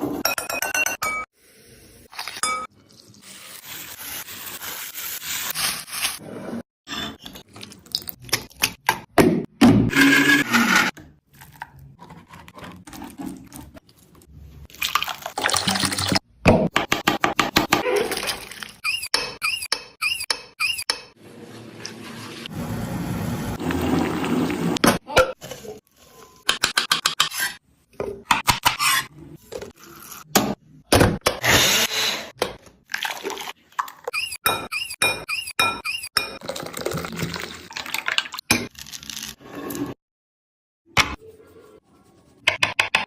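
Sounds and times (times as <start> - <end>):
squeaks: 18.8 - 21.1.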